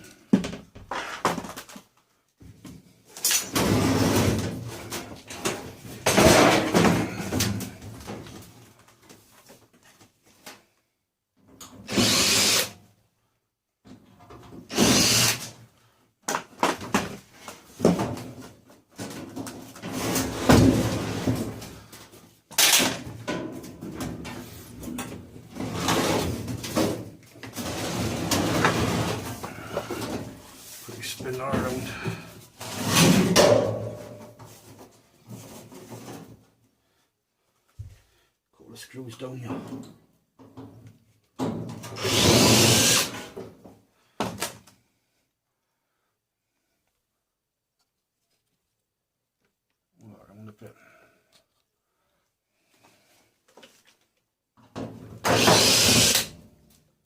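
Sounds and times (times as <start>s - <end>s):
power drill removing screws: 11.8s - 12.8s, 14.7s - 15.6s, 22.6s - 23.0s, 41.8s - 43.4s, 55.2s - 56.4s.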